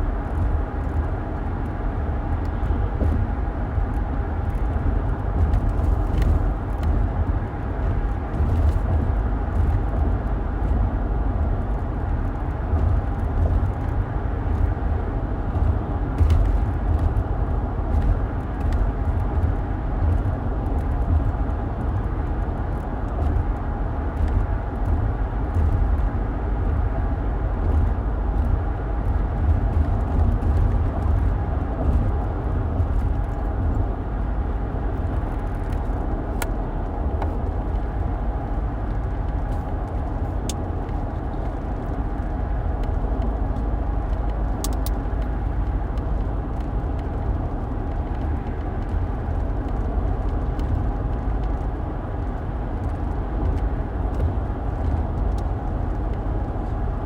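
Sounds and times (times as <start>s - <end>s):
road and engine rumble in car: 0.0s - 57.0s
faint light ticks: 42.8s - 47.2s.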